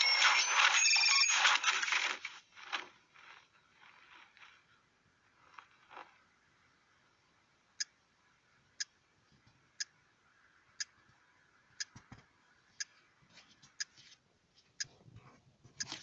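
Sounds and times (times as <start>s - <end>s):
clock ticking: 7.8s - 8.0s, 9.8s - 10.0s
soft clicks and rustles: 10.8s - 16.0s.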